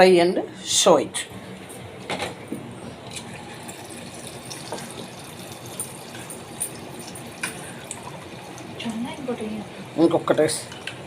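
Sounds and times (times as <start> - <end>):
food deep-frying in oil: 3.1 - 11.0.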